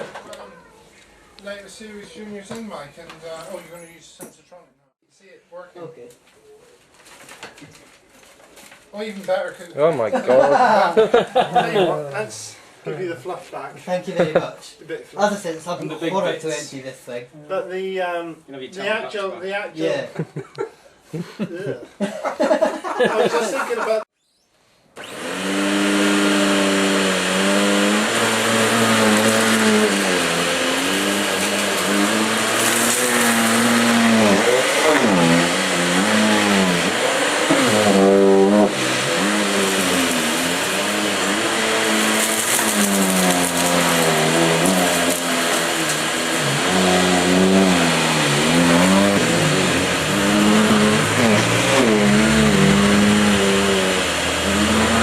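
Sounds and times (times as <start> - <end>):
vacuum cleaner running on a rug: 25.0 - 55.0.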